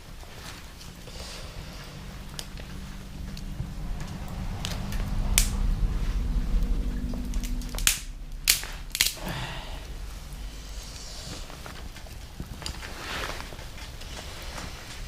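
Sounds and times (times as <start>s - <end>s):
chopsticks crackling in fire: 0.0s - 5.6s, 7.1s - 15.0s
low rumble: 0.0s - 15.0s.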